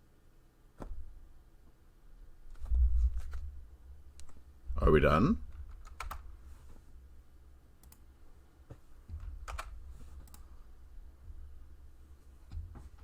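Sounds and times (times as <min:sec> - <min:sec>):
low steady hum: 0:00.0 - 0:13.0
keyboard or mouse clicks: 0:07.8 - 0:08.0, 0:09.1 - 0:10.5.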